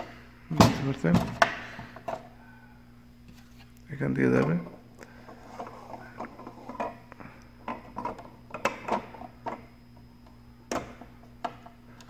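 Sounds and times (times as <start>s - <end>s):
faint steady hum: 0.0s - 12.0s
plastic parts clicking: 7.6s - 9.7s.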